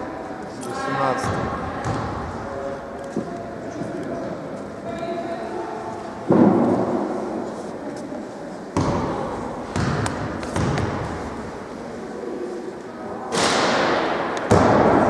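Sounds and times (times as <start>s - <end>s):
basketball bouncing on court: 1.2s - 2.1s, 8.8s - 11.2s
loud bangs ringing in hall: 6.2s - 7.3s, 13.2s - 15.0s.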